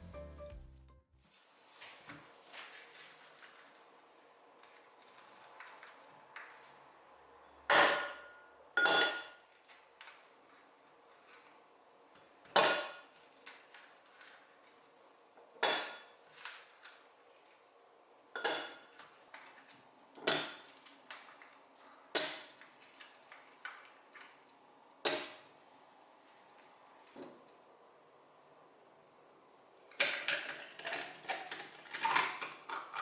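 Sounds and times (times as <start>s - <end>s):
cutlery clinking against dishes: 7.7s - 9.4s.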